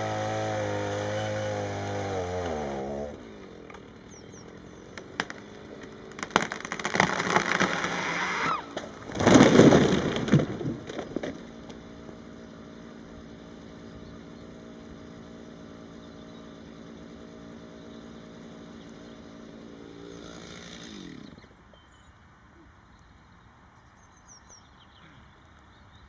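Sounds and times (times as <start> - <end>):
chainsaw idling: 0.0 - 21.7
tree crashing to the ground: 4.9 - 12.3.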